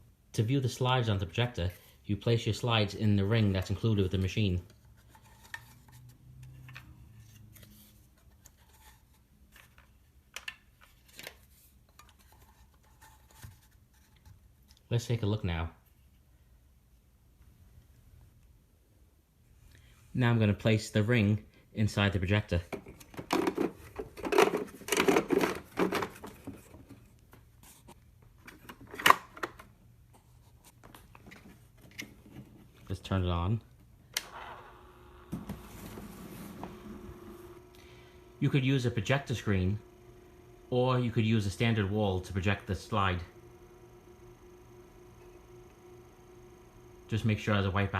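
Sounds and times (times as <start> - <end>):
rattling and scraping handling: 3.6 - 14.8, 22.7 - 32.9
handling noises: 22.7 - 33.0, 33.7 - 47.1.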